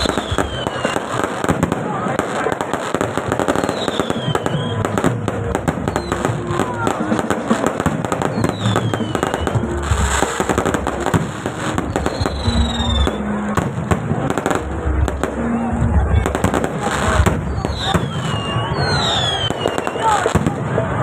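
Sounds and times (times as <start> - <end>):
falling firework whistles: 0.0 - 1.3, 3.5 - 5.0, 8.3 - 10.1, 17.3 - 20.3
fireworks bangs and crackles: 0.0 - 21.0.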